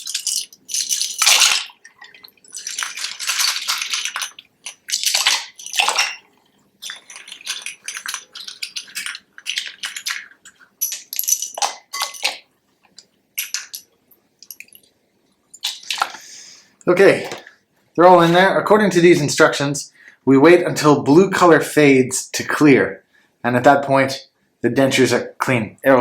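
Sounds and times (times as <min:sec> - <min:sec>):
plastic keycaps clattering into water: 0:00.0 - 0:12.5, 0:13.4 - 0:14.9, 0:15.6 - 0:16.2.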